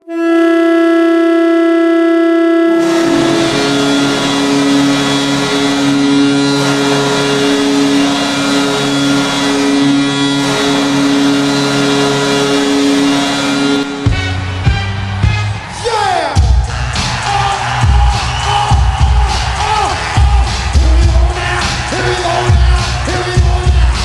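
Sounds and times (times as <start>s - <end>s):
goal horn blowing: 0.0s - 15.8s
noisy wash: 2.8s - 15.8s.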